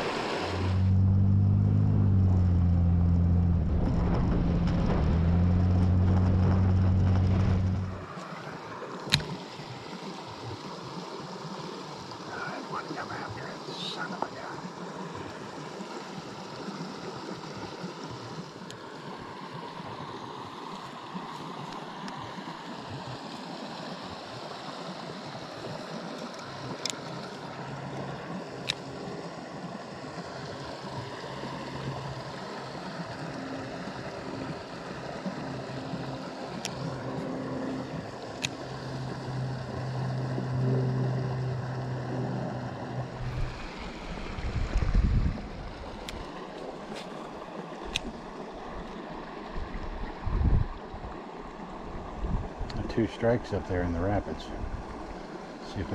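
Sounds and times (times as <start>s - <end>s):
creek flowing over rocks: 0.0s - 3.7s, 4.8s - 55.9s
low hum with overtones: 0.0s - 8.2s, 30.3s - 46.9s.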